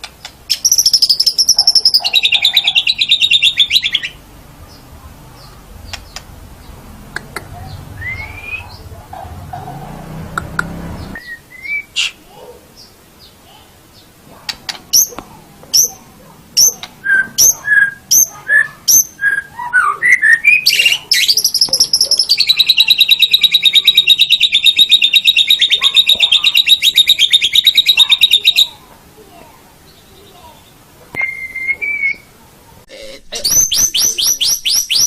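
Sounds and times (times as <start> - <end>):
bird singing whistled notes and trill: 0.2 - 6.8, 7.7 - 8.9, 11.0 - 12.2, 15.8 - 16.0, 16.6 - 28.8, 29.9 - 32.3, 33.4 - 35.0.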